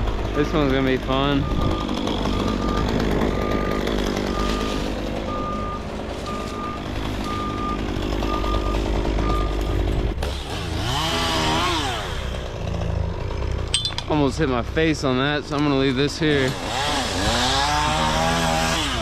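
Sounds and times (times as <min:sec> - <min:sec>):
chainsaw revving: 0:00.0 - 0:05.9, 0:06.7 - 0:13.7, 0:15.0 - 0:19.0
heavy diesel machinery running: 0:00.0 - 0:19.0
reversing alarm beeping: 0:01.3 - 0:09.9.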